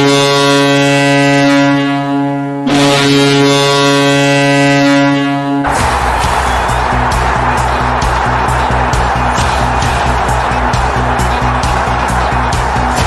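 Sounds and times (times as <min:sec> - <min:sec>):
goal horn blasts: 0:00.0 - 0:10.4.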